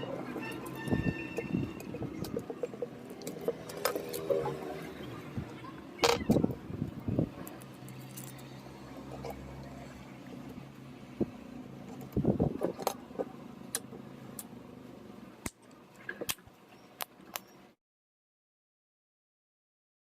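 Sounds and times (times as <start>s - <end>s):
handling clicks and knocks: 0.4s - 4.6s, 11.8s - 14.5s.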